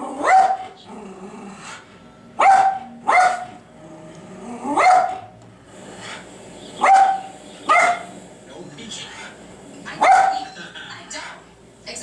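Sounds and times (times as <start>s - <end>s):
dog barking: 0.0s - 0.8s, 2.4s - 3.6s, 4.7s - 5.3s, 6.8s - 8.2s, 10.0s - 10.5s.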